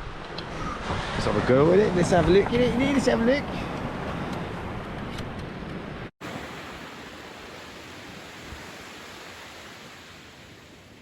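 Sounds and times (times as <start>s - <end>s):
sea surf washing onto beach: 6.2s - 11.0s.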